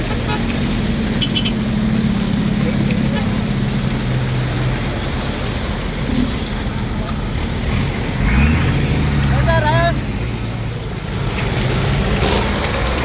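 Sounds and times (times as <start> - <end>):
vehicle engine droning: 0.0 - 13.0.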